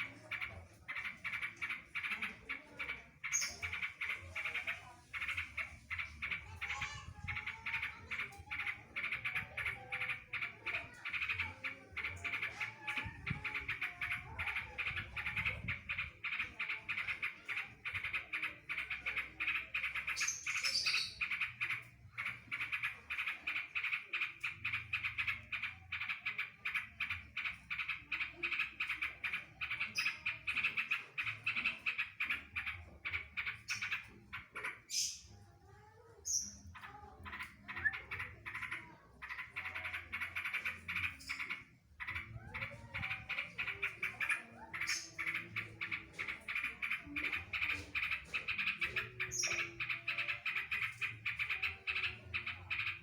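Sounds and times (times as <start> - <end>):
bulbul singing rapid rattle: 36.3 - 53.0.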